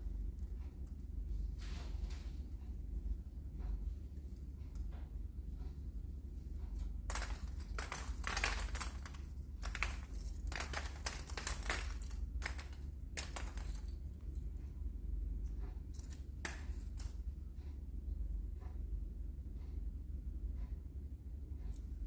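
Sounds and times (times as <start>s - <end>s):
steady low hum: 0.0s - 22.0s
foam crumbling crackling rustles: 7.1s - 14.0s.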